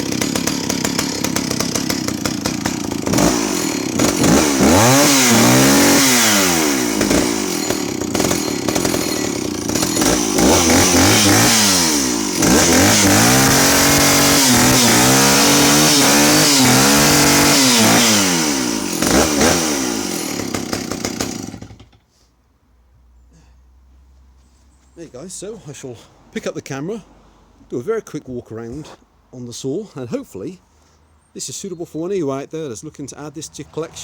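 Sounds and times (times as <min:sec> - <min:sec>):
chainsaw revving: 0:00.0 - 0:22.0.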